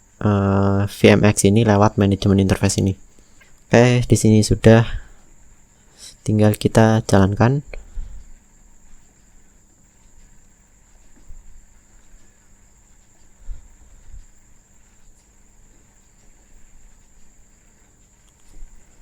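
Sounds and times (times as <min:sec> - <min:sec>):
soft low thumps: 0:11.0 - 0:15.2.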